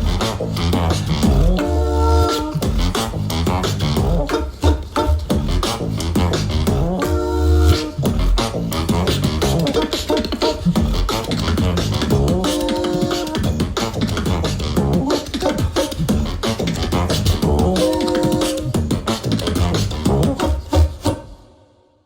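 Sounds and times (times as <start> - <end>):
beatbox kick and snare hits: 0.0 - 21.2
beatbox bass line: 0.0 - 21.3
hummed tones: 6.7 - 8.2.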